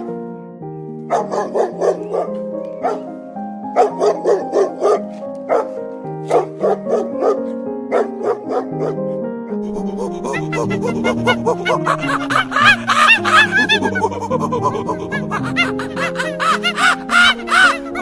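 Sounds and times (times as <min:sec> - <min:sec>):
background music with held notes: 0:00.0 - 0:18.0
dog barking: 0:01.1 - 0:03.1, 0:03.7 - 0:09.1.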